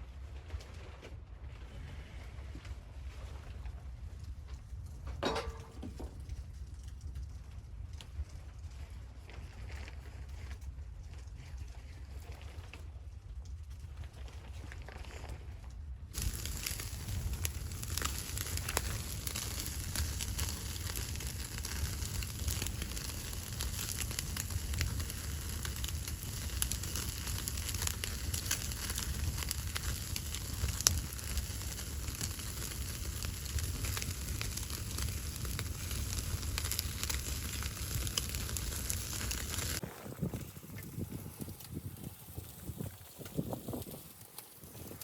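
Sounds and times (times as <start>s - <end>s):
wood fire crackling and popping: 4.5s - 11.3s, 16.1s - 45.0s.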